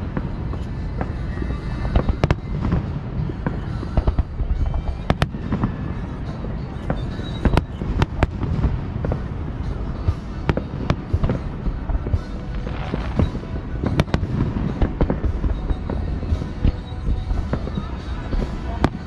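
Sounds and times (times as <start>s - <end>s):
firework shells bursting: 0.0s - 19.0s
rumble of distant fireworks: 0.0s - 19.0s.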